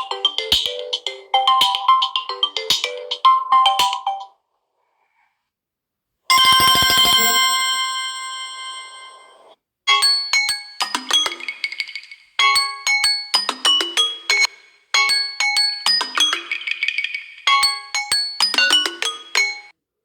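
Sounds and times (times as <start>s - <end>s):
bright ringing tone with buzz: 6.3s - 9.4s
bell-like ringtone tune: 6.3s - 19.7s.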